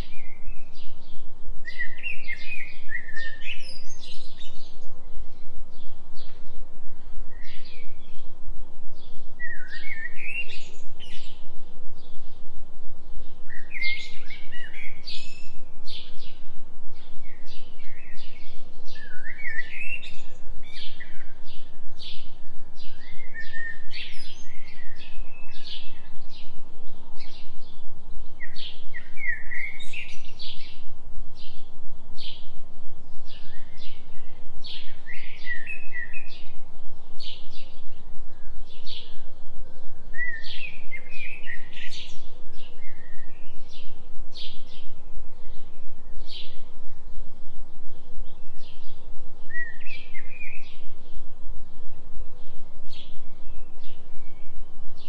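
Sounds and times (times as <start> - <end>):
low binaural tone hum: 0.0 - 55.0
songbirds chirping and trilling: 0.0 - 55.0.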